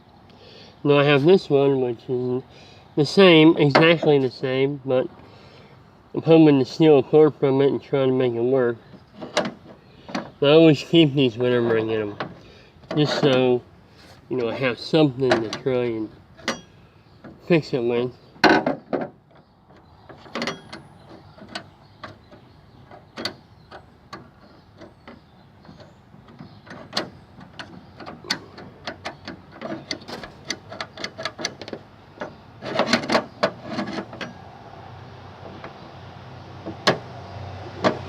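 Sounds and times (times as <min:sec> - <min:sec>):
metal lock parts clicking: 0:15.2 - 0:17.4, 0:18.4 - 0:34.4.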